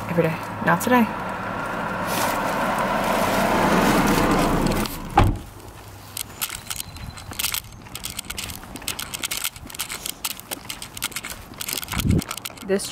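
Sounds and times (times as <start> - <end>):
car driving past: 1.0 - 5.2
dull thump: 5.1 - 5.5.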